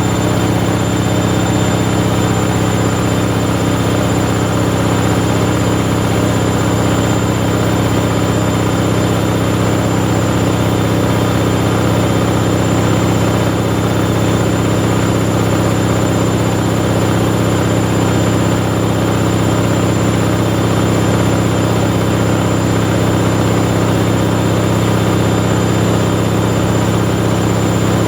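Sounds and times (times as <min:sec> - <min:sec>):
washing machine spinning: 0:00.0 - 0:28.0.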